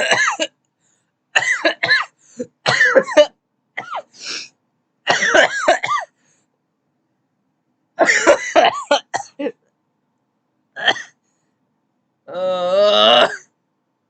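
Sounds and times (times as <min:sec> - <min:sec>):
person coughing harshly: 0:00.0 - 0:00.6, 0:01.4 - 0:04.4, 0:05.1 - 0:06.2, 0:08.0 - 0:09.6, 0:10.8 - 0:11.2, 0:12.7 - 0:13.5.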